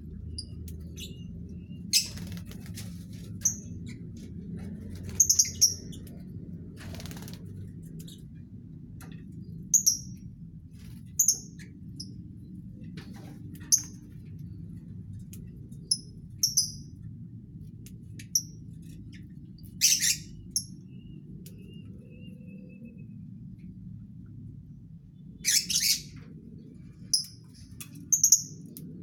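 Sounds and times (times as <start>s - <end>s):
low steady hum: 0.0s - 29.0s
birds chirping: 0.2s - 2.7s.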